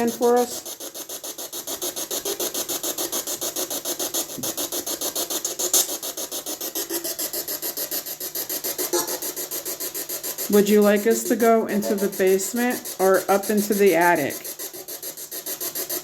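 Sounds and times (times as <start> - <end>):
rapid chopping radio static: 0.0 - 0.9, 10.5 - 14.9.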